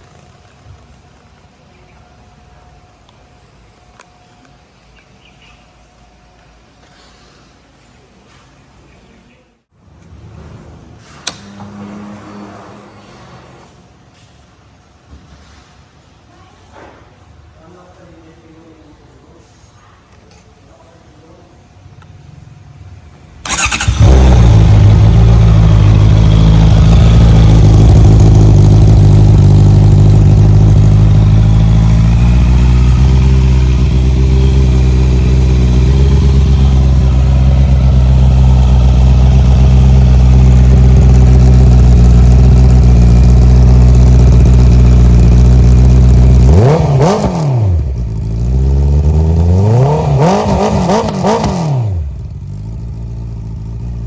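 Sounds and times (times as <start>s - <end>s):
motorcycle engine idling and revving: 10.3s - 13.7s, 22.3s - 54.0s.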